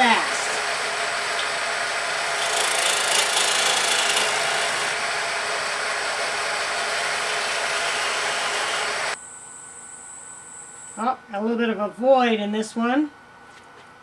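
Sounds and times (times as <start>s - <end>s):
lathe tool cutting: 0.0s - 9.2s
wood lathe running: 0.0s - 9.2s.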